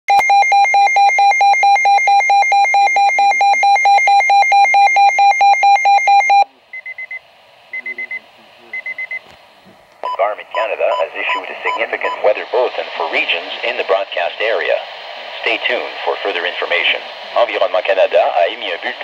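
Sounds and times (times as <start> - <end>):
faint radio hiss: 6.3 - 19.0.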